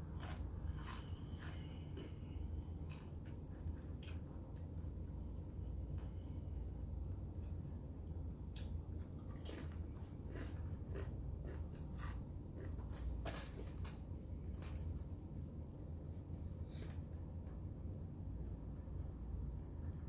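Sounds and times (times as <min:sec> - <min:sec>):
steady low hum: 0:00.0 - 0:20.0
wet mouth chewing: 0:08.6 - 0:13.0.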